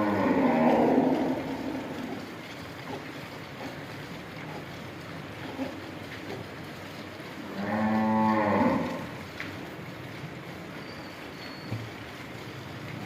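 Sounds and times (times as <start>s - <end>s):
cow mooing: 0.0s - 2.2s, 7.5s - 9.2s.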